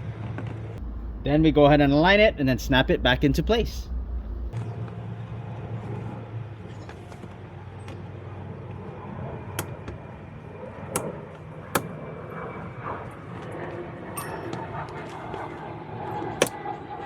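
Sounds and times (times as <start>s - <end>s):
plastic clips snapping into place: 9.6s - 10.0s.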